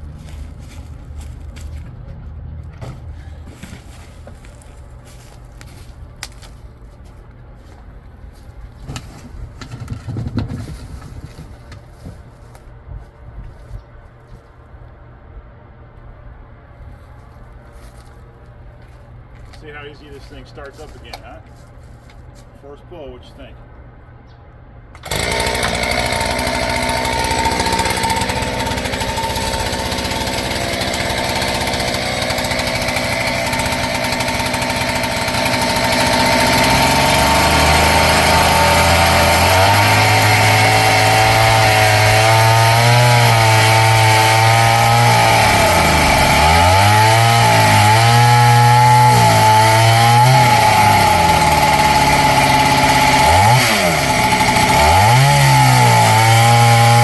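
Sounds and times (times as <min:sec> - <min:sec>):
chainsaw engine revving: 0:25.0 - 0:57.0.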